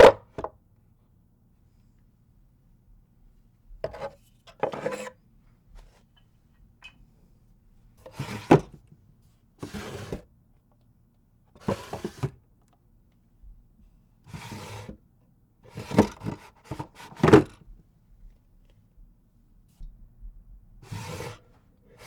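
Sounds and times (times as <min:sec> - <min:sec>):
wooden drawer sliding: 0:08.2 - 0:08.7, 0:09.6 - 0:10.2, 0:11.7 - 0:12.3, 0:14.4 - 0:14.9, 0:20.8 - 0:21.5.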